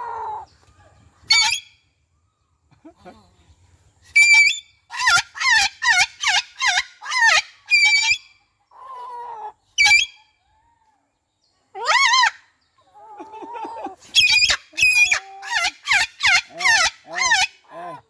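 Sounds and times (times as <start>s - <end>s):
cockatoo squawking: 13.0s - 18.0s.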